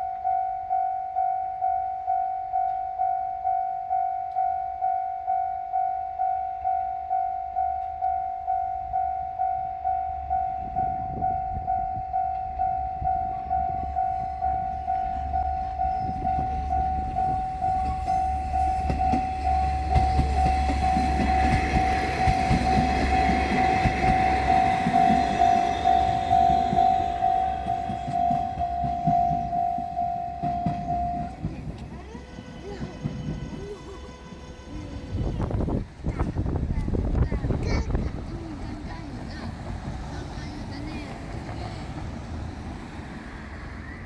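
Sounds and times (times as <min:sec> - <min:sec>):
level crossing bell ringing: 0:00.0 - 0:31.9
diesel railcar passing: 0:00.0 - 0:44.0.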